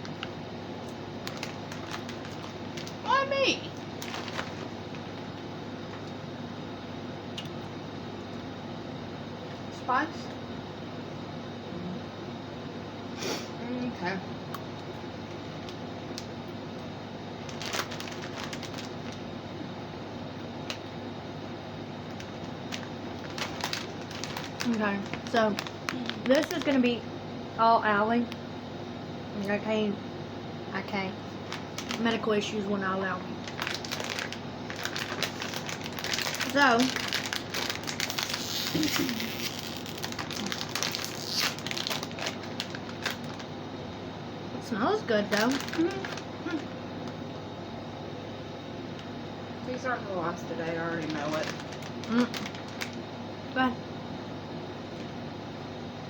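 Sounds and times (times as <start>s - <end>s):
steady room hum: 0.0s - 56.0s
snack wrapper crinkling: 0.1s - 3.0s, 3.8s - 5.1s, 17.4s - 19.2s, 22.1s - 27.0s, 31.3s - 32.2s, 33.4s - 43.5s, 45.3s - 47.2s, 50.9s - 53.0s.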